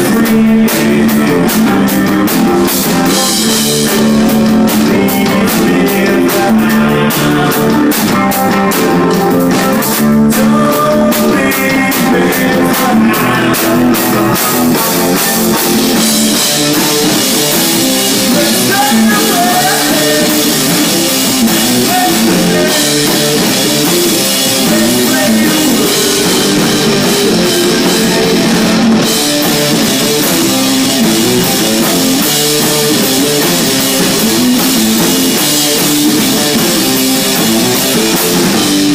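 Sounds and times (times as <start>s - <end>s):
rock band playing loudly: 0.0s - 38.9s
drum hits: 10.8s - 38.9s.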